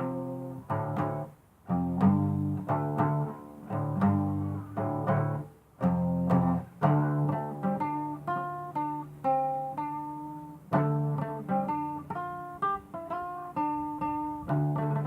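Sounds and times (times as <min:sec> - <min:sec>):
guitar picked notes and chords: 0:00.0 - 0:15.0.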